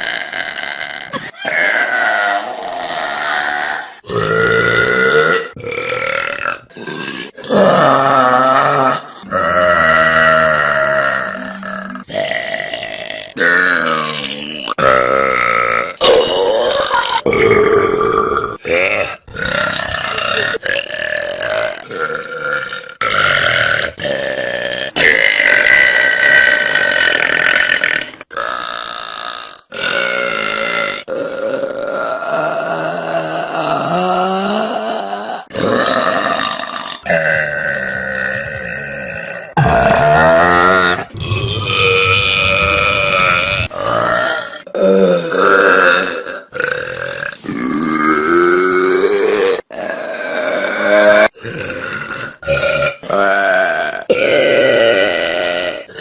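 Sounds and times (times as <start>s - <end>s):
person burping: 0.0s - 56.0s.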